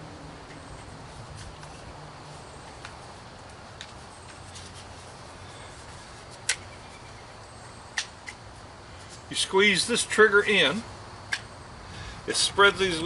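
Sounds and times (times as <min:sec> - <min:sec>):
sharp plastic clicks: 0:07.9 - 0:08.4, 0:11.3 - 0:11.5.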